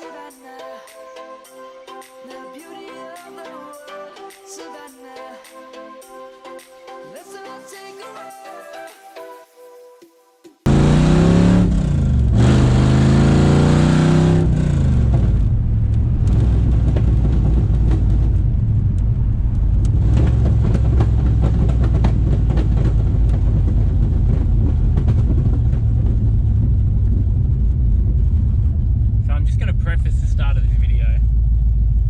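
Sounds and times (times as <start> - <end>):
car engine revving and rumbling: 10.7 - 32.0.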